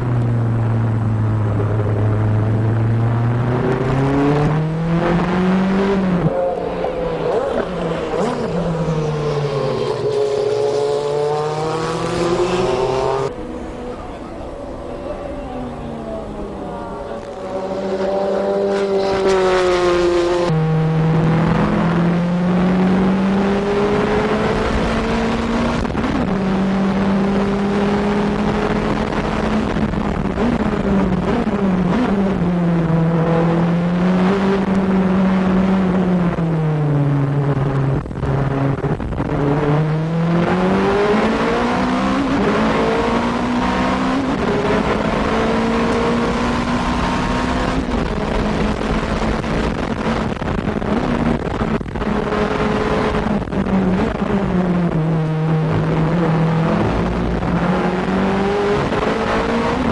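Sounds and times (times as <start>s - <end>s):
racing engine at high revs: 0.0s - 59.9s.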